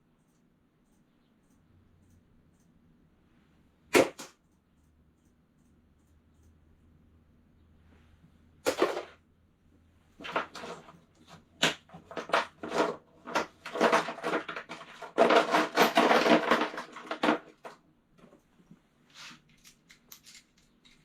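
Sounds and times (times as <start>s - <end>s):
metal sockets clinking: 19.5s - 21.0s.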